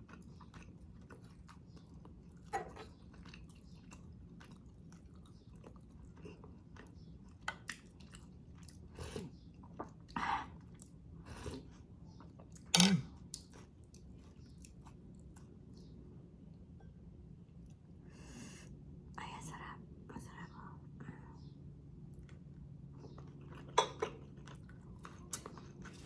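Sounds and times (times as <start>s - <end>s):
person chewing: 0.0s - 15.9s, 23.0s - 26.0s.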